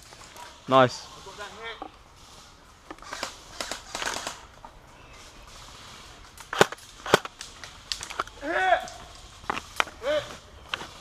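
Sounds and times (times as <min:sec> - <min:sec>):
loud sharp cracks: 0:03.0 - 0:04.5, 0:06.4 - 0:09.0.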